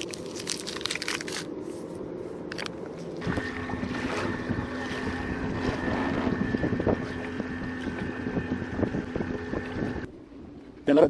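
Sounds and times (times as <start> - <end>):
electric motor whine: 3.2 - 10.1
water noise: 3.2 - 10.1
wind buffeting microphone: 3.2 - 10.1.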